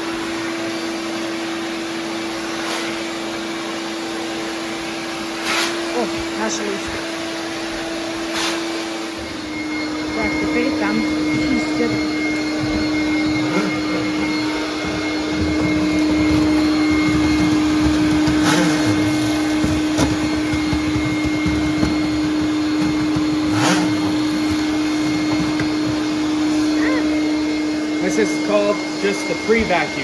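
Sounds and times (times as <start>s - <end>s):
vacuum droning hum: 9.4s - 30.0s.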